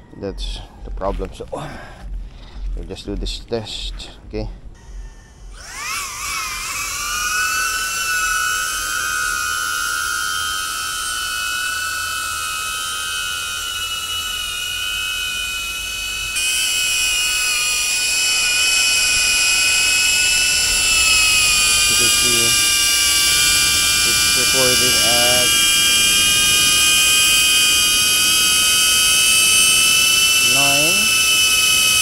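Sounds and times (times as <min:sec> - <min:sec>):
drone motors whining: 0:00.0 - 0:32.0.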